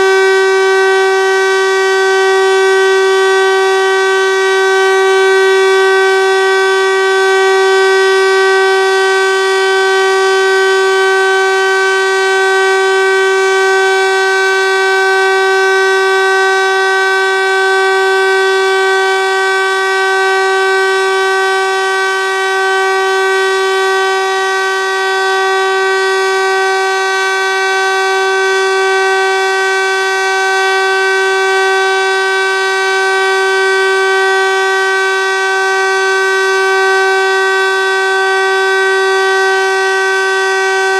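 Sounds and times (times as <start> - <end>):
siren steady tone: 0.0 - 40.9.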